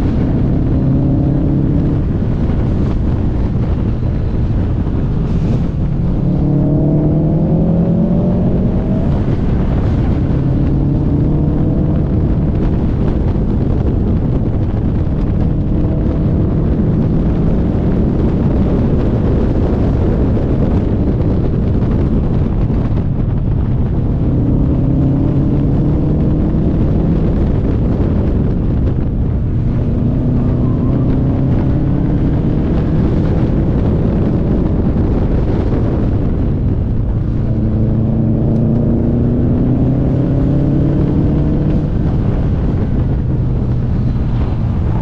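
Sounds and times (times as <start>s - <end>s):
car engine revving: 0.0s - 45.0s
wind and road noise: 0.0s - 45.0s.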